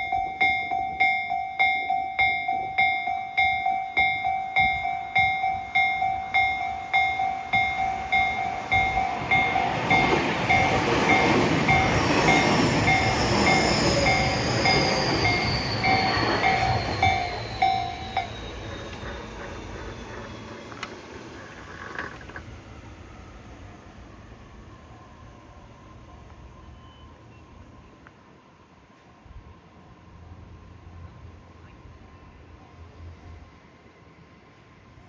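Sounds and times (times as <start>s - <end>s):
level crossing bell ringing: 0.0s - 18.9s
electric train rolling: 0.0s - 24.8s
high motor whine: 3.4s - 22.7s.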